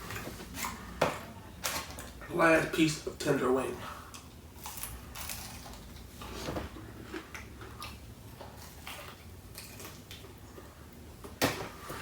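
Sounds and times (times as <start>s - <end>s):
person chewing with wet smacks: 4.1s - 11.4s.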